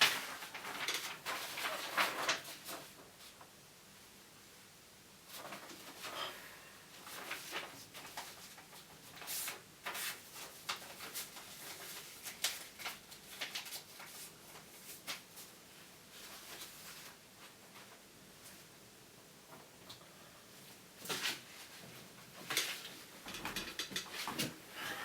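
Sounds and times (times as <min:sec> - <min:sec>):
soft rustling: 0:07.0 - 0:18.8.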